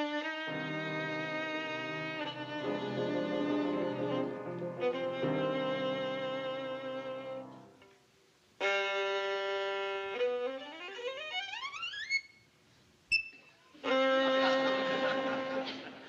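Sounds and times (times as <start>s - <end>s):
violin playing: 0.0s - 7.9s.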